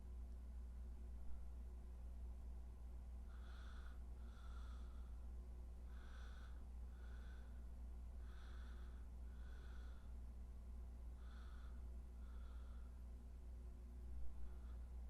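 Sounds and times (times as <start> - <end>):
low electrical hum: 0.0 - 15.0
person breathing through nose: 3.3 - 5.2, 5.9 - 7.6, 8.2 - 10.2.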